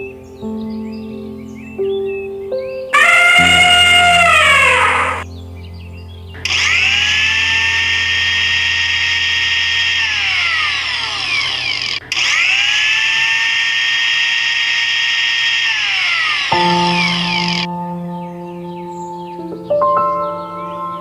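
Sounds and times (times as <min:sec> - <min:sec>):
small electric motor whining: 0:06.5 - 0:17.7.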